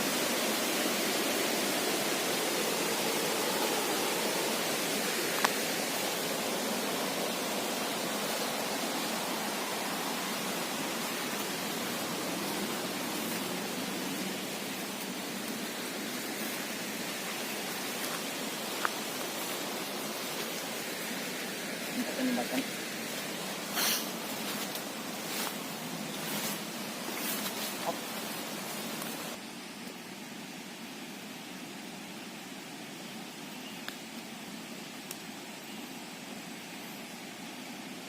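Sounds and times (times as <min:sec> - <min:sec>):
fast-flowing river water: 0:00.0 - 0:29.4
faint click: 0:33.8 - 0:34.0, 0:35.0 - 0:35.2.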